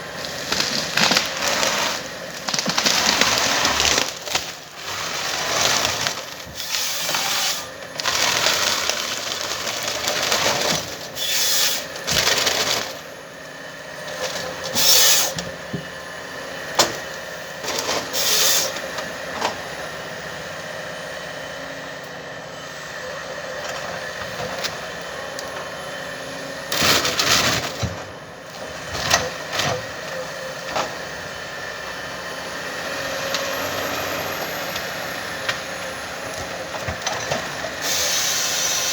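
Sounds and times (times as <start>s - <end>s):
harvester engine running: 0.0s - 38.9s
wood cracking and snapping: 0.2s - 4.8s.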